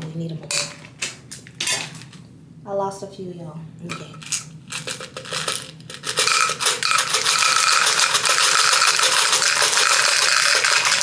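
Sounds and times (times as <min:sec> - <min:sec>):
mints clattering into bottle: 0:03.9 - 0:11.0.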